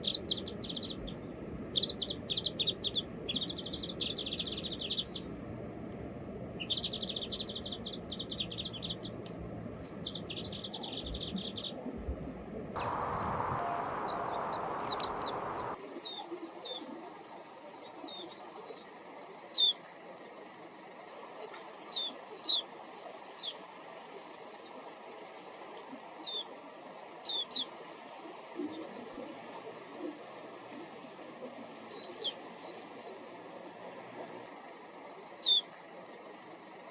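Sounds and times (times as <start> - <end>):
high chattering bird trills: 12.8 - 15.8
thin high bird notes: 12.8 - 15.8.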